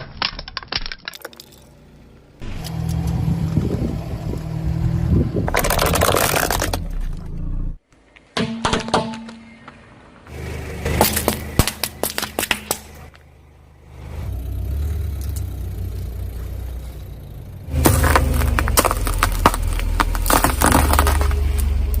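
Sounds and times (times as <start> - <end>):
tyre crushing brittle objects: 5.5 - 7.3, 10.9 - 13.2, 17.7 - 22.0
car engine running slowly: 13.0 - 22.0.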